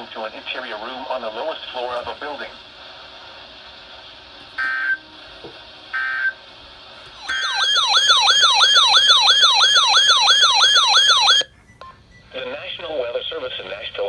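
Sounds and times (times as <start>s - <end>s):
warbling electronic siren alert: 7.2s - 11.5s.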